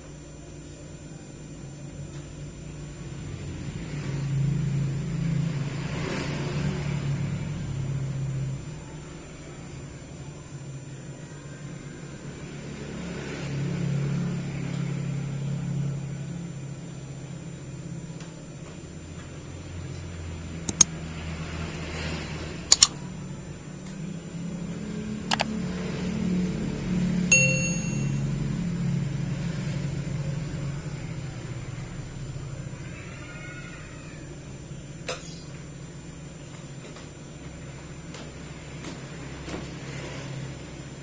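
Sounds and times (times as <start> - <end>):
sharp clicks: 22.7 - 23.0
short ding: 27.3 - 28.3.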